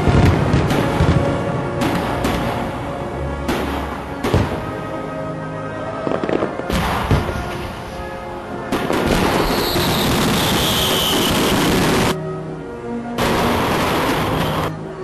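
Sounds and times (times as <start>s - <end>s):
dense firework crackling: 0.0s - 2.9s, 3.5s - 4.9s, 6.0s - 12.2s, 13.2s - 14.7s
firework bangs: 0.0s - 5.0s, 6.0s - 12.2s, 13.2s - 14.7s
background music: 0.0s - 15.0s.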